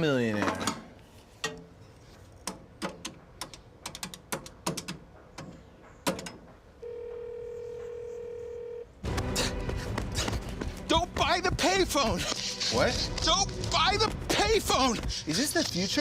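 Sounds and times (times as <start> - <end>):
steady phone tone: 6.8 - 8.9.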